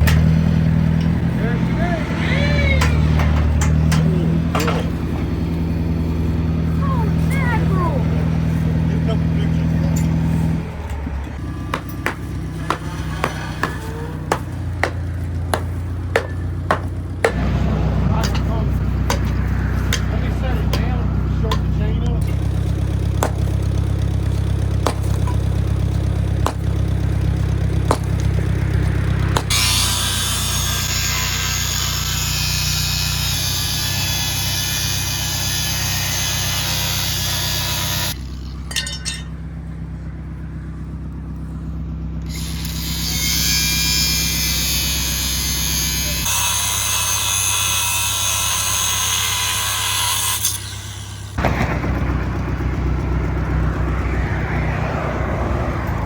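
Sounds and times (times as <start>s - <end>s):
engine idling: 0.0s - 30.8s, 34.7s - 46.3s, 50.5s - 56.0s
harsh power tool noise: 24.8s - 38.5s, 42.3s - 51.4s.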